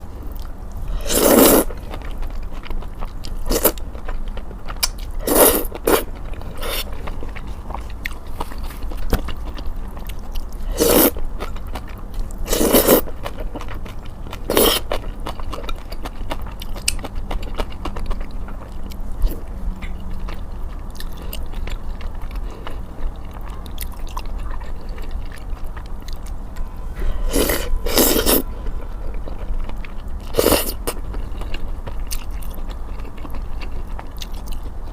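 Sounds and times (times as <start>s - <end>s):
chewing: 0.2s - 34.9s.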